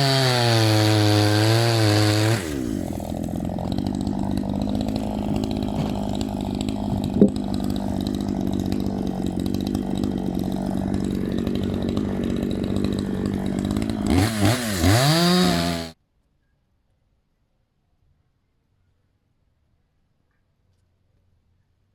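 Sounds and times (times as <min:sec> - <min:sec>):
chainsaw running under load: 0:00.0 - 0:16.0.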